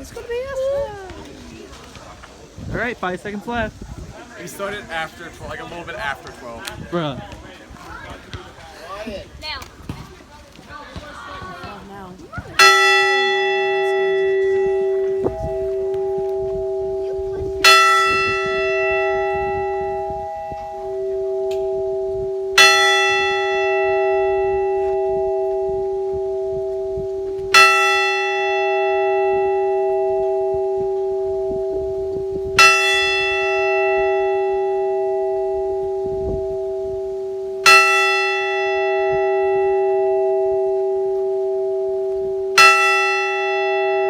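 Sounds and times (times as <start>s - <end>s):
large bell tolling: 12.6s - 44.0s.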